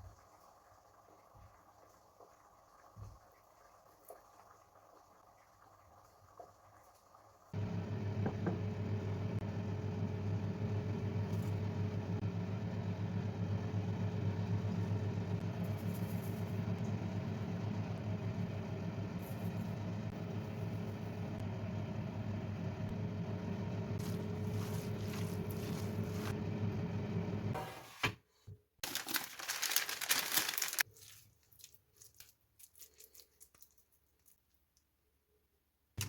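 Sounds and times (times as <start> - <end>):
appliance motor humming: 7.6 - 27.9.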